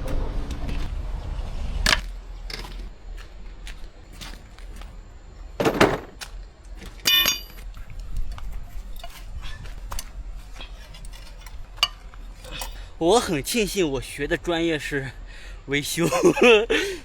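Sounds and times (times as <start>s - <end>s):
metal hand tools clinking: 7.0s - 7.6s
ringing metallic clink: 7.0s - 7.6s.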